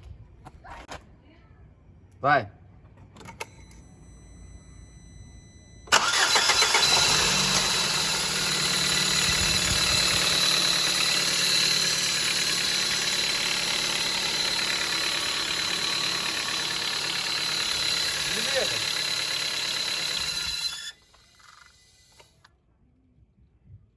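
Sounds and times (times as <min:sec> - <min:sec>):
car engine starting and idling: 0:05.7 - 0:22.5.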